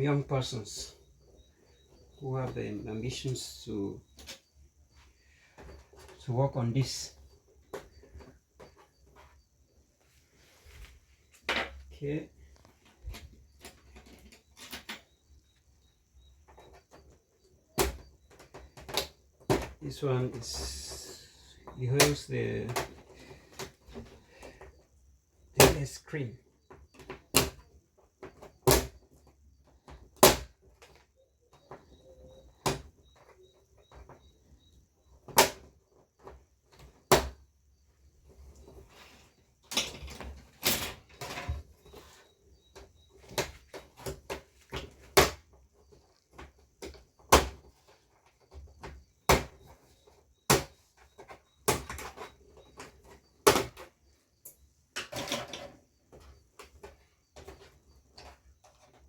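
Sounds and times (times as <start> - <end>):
plastic parts clicking and knocking: 12.6 - 15.2, 16.4 - 21.0, 26.6 - 34.3, 39.6 - 59.0.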